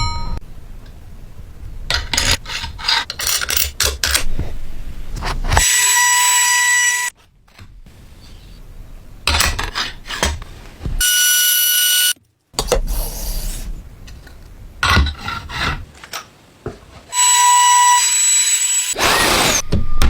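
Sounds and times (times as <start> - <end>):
hand tool scraping wood: 15.1 - 15.9.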